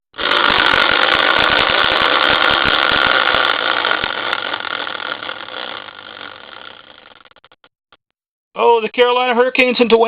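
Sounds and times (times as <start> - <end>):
prize wheel clicking rattle: 0.2 - 7.6.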